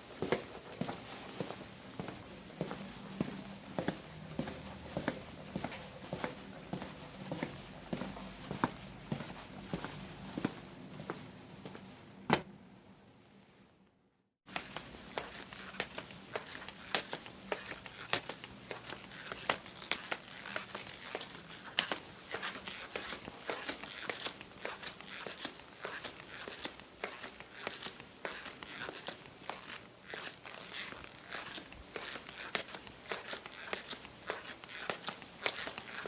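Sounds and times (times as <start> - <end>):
crisp crackling footsteps: 14.5 - 36.0.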